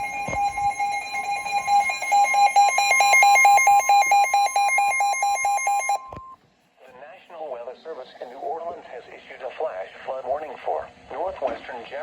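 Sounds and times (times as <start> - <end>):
loud steady high alert tone: 0.0 - 6.2
rapid pulsing beeps: 0.0 - 6.2.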